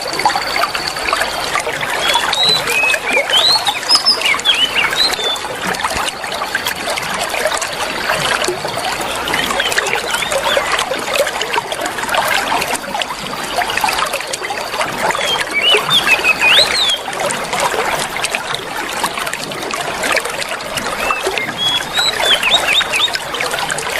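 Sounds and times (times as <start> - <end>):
birds chirping: 0.0 - 6.3, 9.2 - 11.0, 15.1 - 17.1, 20.8 - 23.5
water trickling and splashing: 0.0 - 23.9.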